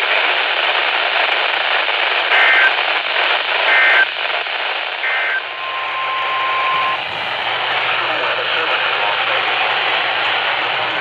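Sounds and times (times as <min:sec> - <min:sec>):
radio static hiss: 0:00.0 - 0:11.0
warbling data tones: 0:05.0 - 0:07.1.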